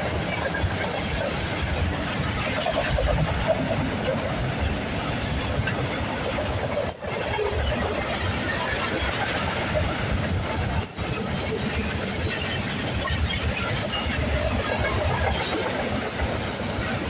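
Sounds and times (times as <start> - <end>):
train wheels rumbling on rails: 0.0 - 17.0.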